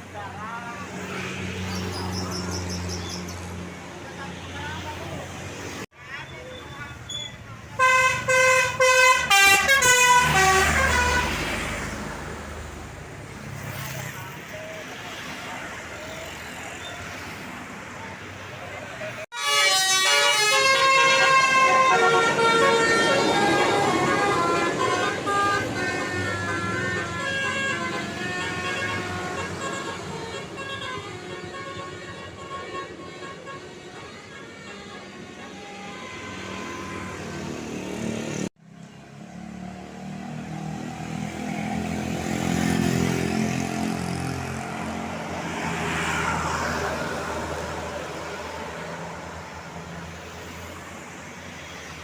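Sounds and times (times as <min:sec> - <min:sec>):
road traffic: 0:00.0 - 0:52.0
street noise: 0:00.0 - 0:52.0
bus engine rumble: 0:01.7 - 0:37.2
musical air horn tune: 0:07.8 - 0:11.4, 0:19.3 - 0:37.3.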